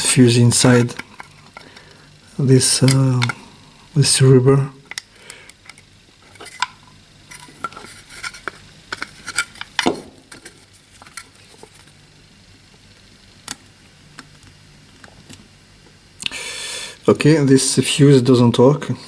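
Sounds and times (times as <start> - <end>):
hands handling parts and tools: 2.8 - 3.4, 4.8 - 12.0.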